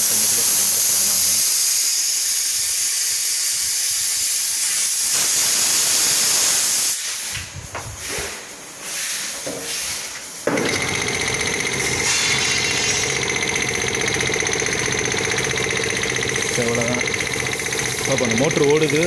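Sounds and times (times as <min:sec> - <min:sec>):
air compressor running: 0:00.0 - 0:02.2, 0:10.5 - 0:19.0
compressed air hissing: 0:00.0 - 0:18.9.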